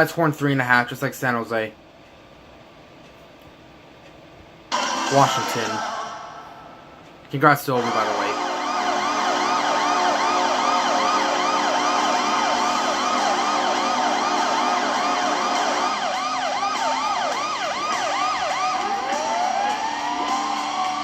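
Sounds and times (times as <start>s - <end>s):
siren-like whoop: 8.0s - 21.0s.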